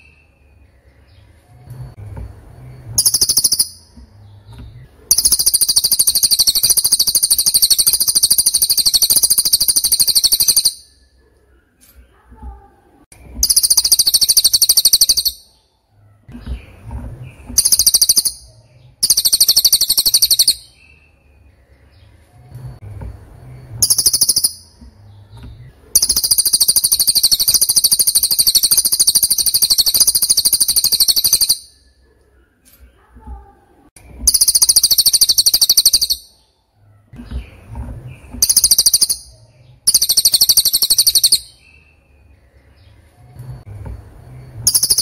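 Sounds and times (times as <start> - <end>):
bird high rapid trill: 3.0 - 3.9, 5.1 - 10.9, 13.4 - 15.5, 17.6 - 20.8, 23.8 - 24.8, 25.9 - 31.8, 34.3 - 36.3, 38.4 - 41.6, 44.6 - 45.0.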